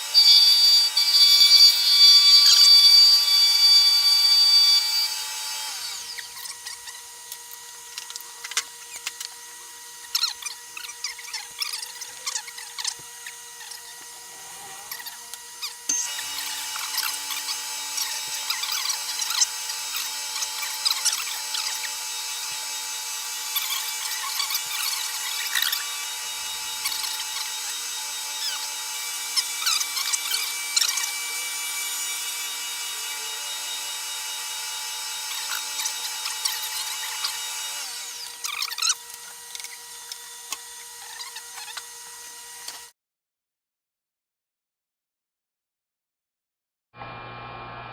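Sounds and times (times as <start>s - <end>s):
cutter cutting into wood: 0.0s - 42.9s
milling machine spindle whine: 0.0s - 42.9s, 47.0s - 47.9s.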